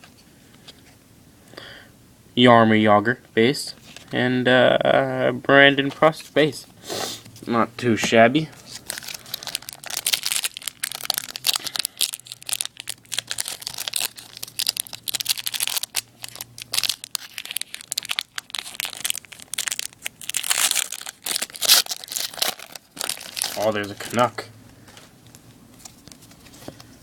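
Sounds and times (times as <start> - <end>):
foil wrapper crinkling and tearing: 8.6 - 24.4
cards being handled: 20.6 - 26.9.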